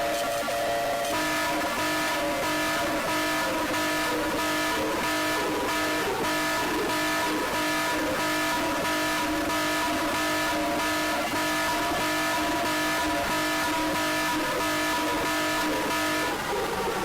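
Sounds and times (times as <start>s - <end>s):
electronic alarm siren: 0.0s - 17.0s.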